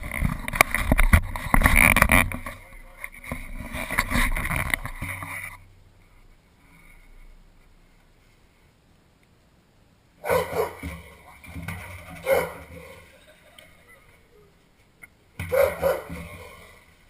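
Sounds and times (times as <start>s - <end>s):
dog barking: 10.2s - 11.1s, 12.1s - 13.0s, 15.5s - 16.8s.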